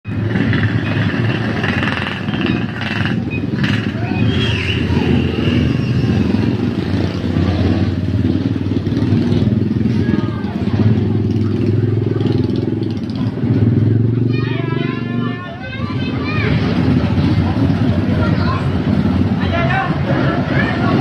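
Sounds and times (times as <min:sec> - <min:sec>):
bus engines rumbling: 0:00.0 - 0:21.0.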